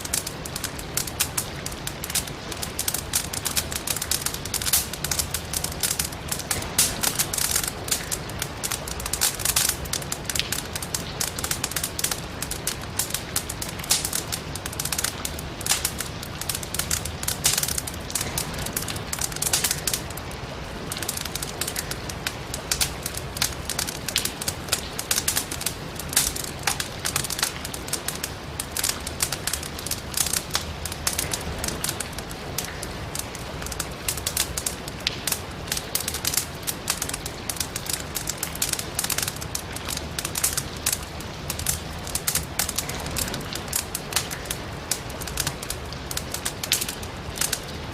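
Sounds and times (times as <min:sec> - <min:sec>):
firewood crackling and popping: 0:00.0 - 0:47.9
low rumble of fire: 0:00.0 - 0:47.9
rain hiss: 0:00.0 - 0:47.9.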